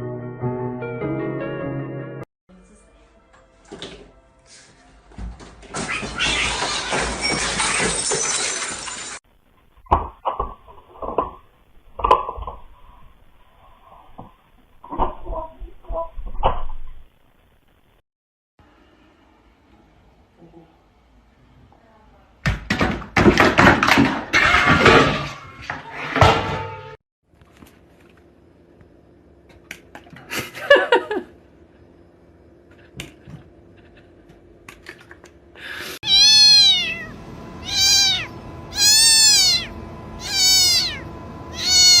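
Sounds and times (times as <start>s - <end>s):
clattering and thumps: 22.5s - 26.9s
cat meowing: 36.0s - 42.0s.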